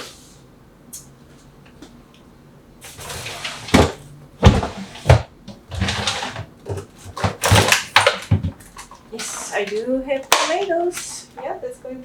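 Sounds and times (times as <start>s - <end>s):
containers thumping: 2.9s - 8.8s.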